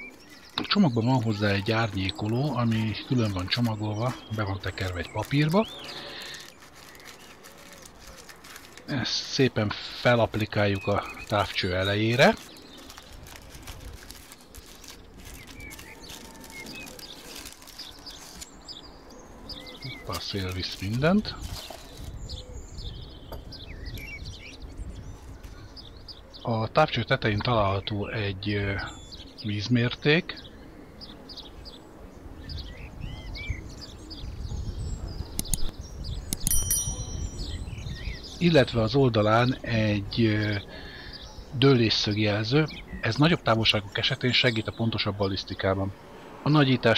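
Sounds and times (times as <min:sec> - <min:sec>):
small birds chirping: 0:00.0 - 0:46.9
wind rumble on microphone: 0:20.8 - 0:26.4, 0:30.8 - 0:38.9.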